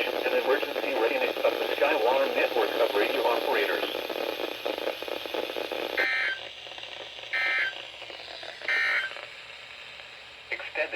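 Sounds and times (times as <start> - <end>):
receiver hiss: 0.0 - 10.9.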